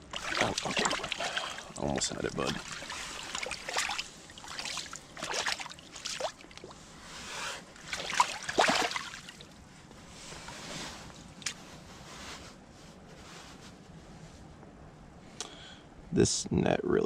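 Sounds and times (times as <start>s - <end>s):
water sloshing and splashing: 0.0s - 9.7s.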